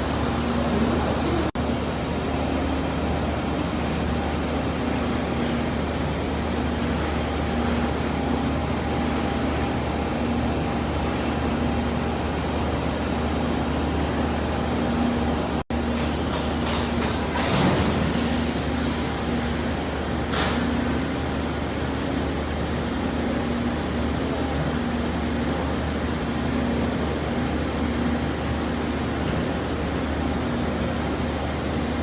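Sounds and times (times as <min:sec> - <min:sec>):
machinery humming and whirring: 0:00.0 - 0:32.0.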